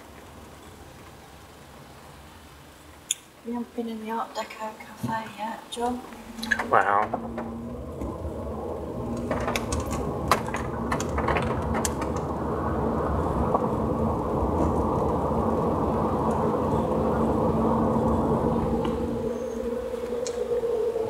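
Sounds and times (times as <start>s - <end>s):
engine and tyre rumble: 5.7s - 21.0s.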